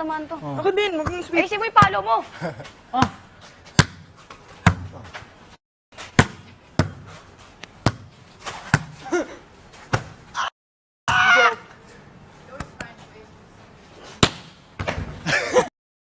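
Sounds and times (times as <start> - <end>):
hands smacking volleyball: 3.0 - 5.0, 6.1 - 9.0, 9.9 - 10.2, 14.2 - 15.1.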